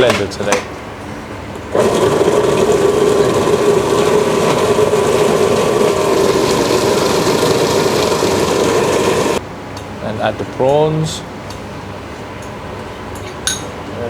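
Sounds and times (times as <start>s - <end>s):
electric blender running: 1.7s - 9.4s.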